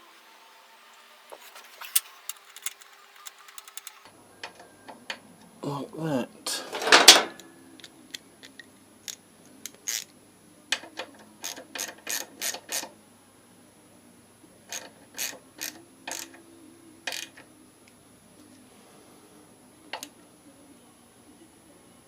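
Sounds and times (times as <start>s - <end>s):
sharp metallic clicks: 1.3s - 4.1s.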